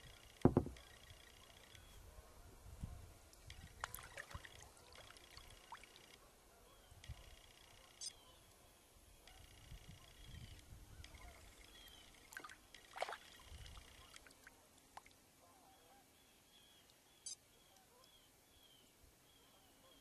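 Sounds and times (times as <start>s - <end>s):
water splash: 12.3s - 13.3s
water sloshing: 12.3s - 13.4s.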